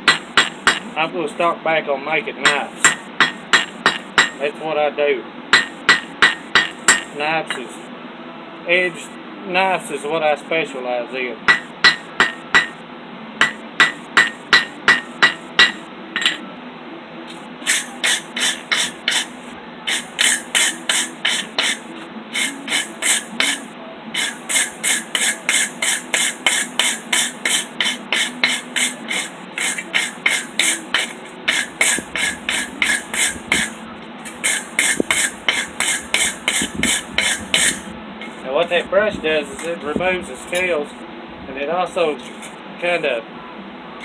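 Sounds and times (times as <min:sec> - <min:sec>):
hammer blows on hot steel: 0:02.5 - 0:04.5, 0:05.6 - 0:07.8, 0:11.5 - 0:12.8, 0:13.4 - 0:16.4, 0:17.6 - 0:38.4
wire brush scrubbing iron: 0:17.6 - 0:38.4.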